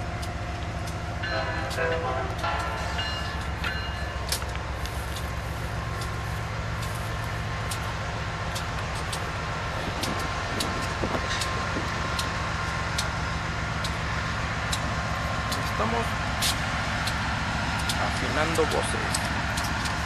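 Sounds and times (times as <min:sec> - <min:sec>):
locomotive engines idling: 0:00.0 - 0:20.0
sharp clicks: 0:06.8 - 0:09.4, 0:14.6 - 0:20.0.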